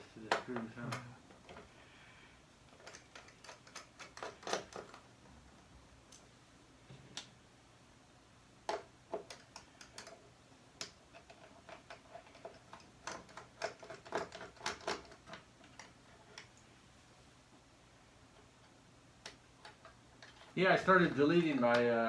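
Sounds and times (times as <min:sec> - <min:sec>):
small hand tools clicking and tapping: 0:02.7 - 0:05.0, 0:08.7 - 0:10.2, 0:10.8 - 0:16.6.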